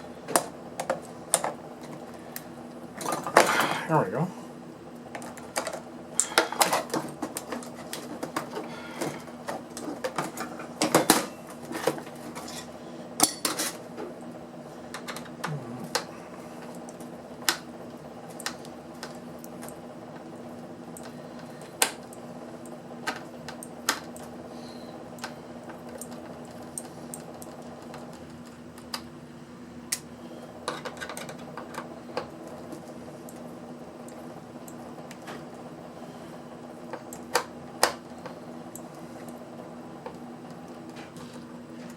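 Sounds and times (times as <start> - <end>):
steady hum: 14.0 - 23.0.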